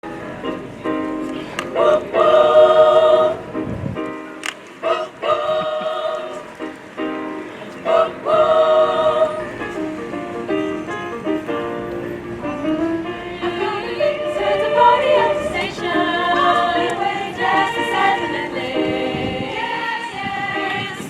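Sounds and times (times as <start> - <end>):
choir singing: 1.6 - 3.7, 4.8 - 6.8, 7.6 - 10.1, 12.8 - 21.0.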